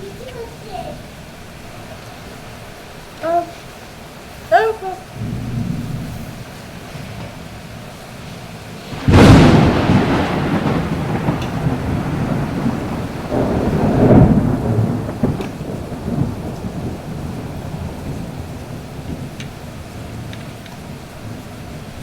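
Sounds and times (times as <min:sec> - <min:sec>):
steady rain: 0:00.0 - 0:22.0
thunder cracking and rolling: 0:05.1 - 0:22.0.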